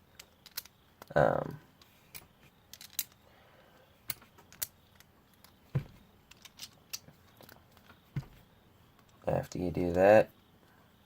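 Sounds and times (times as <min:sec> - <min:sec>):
plastic toy bricks clicking: 0:00.2 - 0:01.2, 0:02.1 - 0:03.2, 0:04.1 - 0:05.6, 0:06.3 - 0:07.9.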